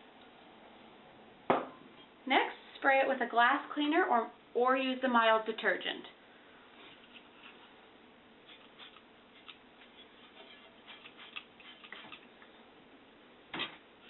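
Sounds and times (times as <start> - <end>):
spray bottle spritz: 8.5 - 12.3.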